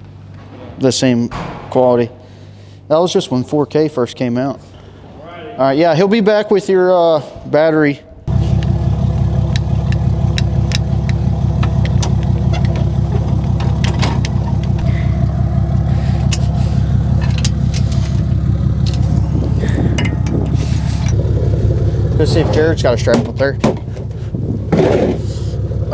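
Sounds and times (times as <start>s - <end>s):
engine low rumble: 8.2s - 25.9s
light rattles and clicks: 9.4s - 14.9s, 16.1s - 21.3s.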